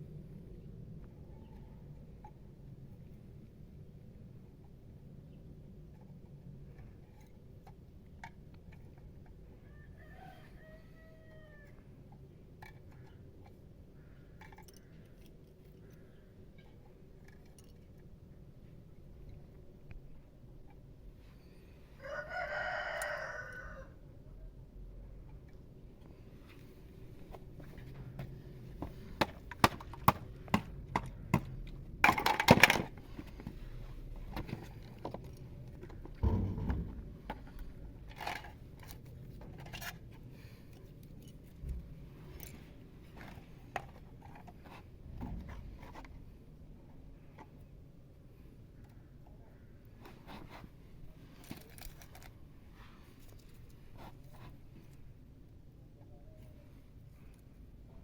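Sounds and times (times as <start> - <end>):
rooster crowing: 9.6 - 11.8, 22.0 - 24.0
sharp wooden clicks and knocks: 28.2 - 33.6.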